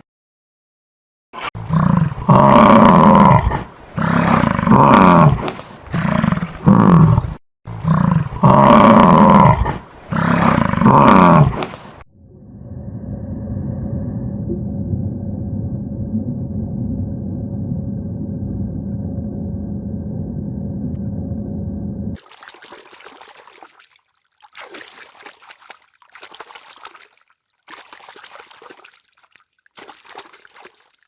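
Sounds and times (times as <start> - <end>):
large animal roaring: 1.6 - 11.6.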